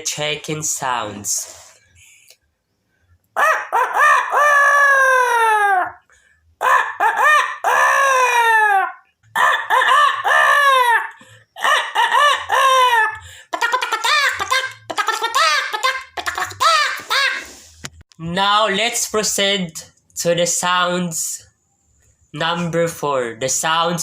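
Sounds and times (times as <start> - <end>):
man imitating rooster crowing: 3.4 - 6.0, 6.6 - 17.4.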